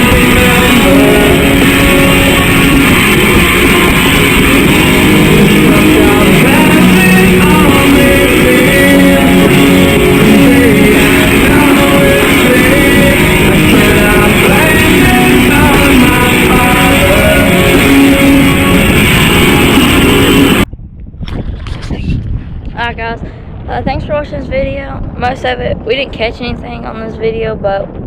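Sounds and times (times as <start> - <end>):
guitar rock music: 0.0 - 20.7.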